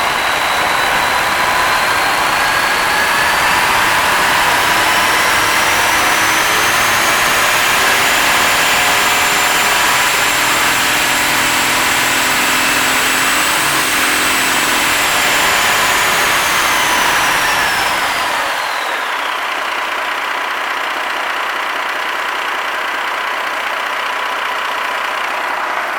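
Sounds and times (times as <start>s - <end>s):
high engine whine: 0.0s - 20.5s
diesel engine running loudly: 0.0s - 25.9s.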